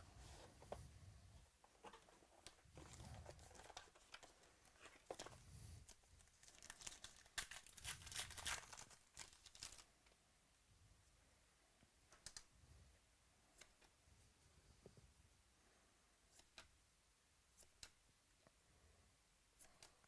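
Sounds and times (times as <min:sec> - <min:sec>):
card packaging tearing and crinkling: 0:06.2 - 0:09.9.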